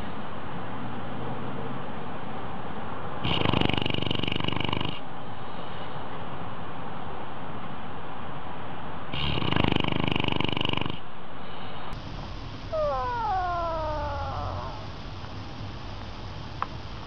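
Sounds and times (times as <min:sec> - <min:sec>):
loud rapid buzzing: 0:12.0 - 0:17.0
cat meowing: 0:12.7 - 0:15.2.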